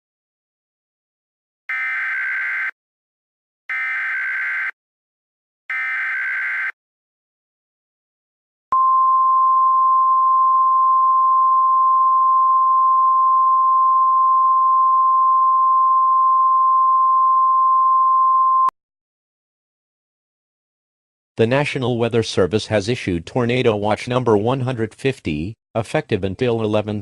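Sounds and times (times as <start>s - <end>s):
loud steady alarm tone: 1.7s - 2.8s, 3.7s - 4.8s, 5.7s - 6.8s.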